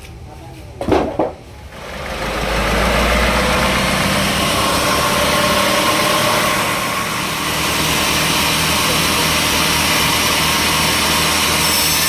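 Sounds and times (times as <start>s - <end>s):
sawmill machinery humming: 1.5s - 12.0s.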